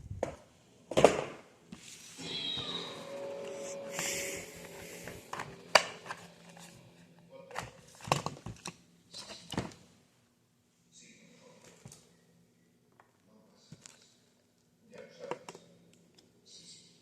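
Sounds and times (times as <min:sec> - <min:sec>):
items being handled: 0:03.0 - 0:10.0.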